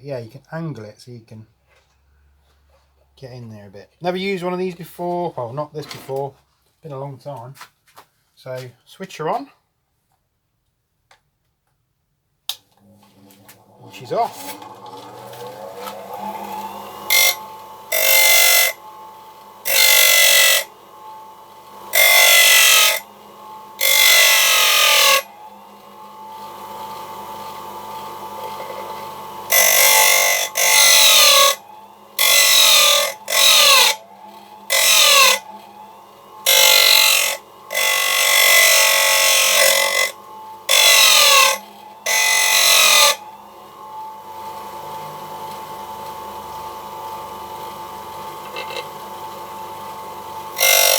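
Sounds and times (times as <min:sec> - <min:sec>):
bench grinder whining: 0:12.8 - 0:50.9
chisel rasping on grinding wheel: 0:13.9 - 0:18.8, 0:19.4 - 0:20.7, 0:21.6 - 0:43.4, 0:48.3 - 0:49.0, 0:50.4 - 0:50.9.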